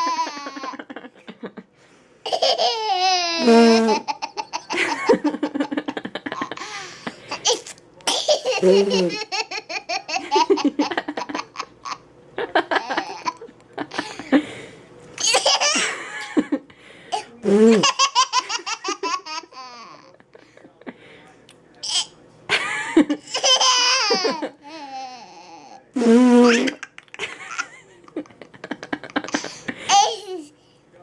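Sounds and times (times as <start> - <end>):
baby laughing: 0.0 - 0.8, 2.3 - 5.1, 7.3 - 12.0, 12.7 - 14.2, 17.8 - 20.2, 23.3 - 25.8, 29.3 - 30.5.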